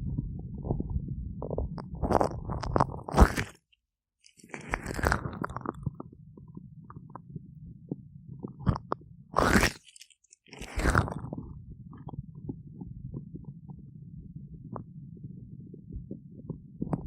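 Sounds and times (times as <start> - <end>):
low rumble: 0.0 - 3.0, 11.1 - 17.0.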